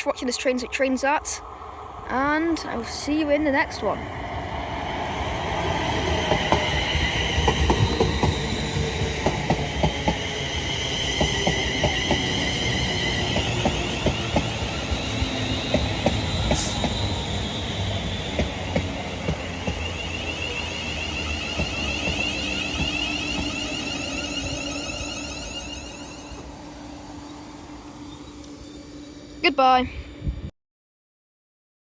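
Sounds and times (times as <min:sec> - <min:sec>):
train rumble: 0:00.0 - 0:30.5
train wheels clicking over track: 0:05.6 - 0:26.6.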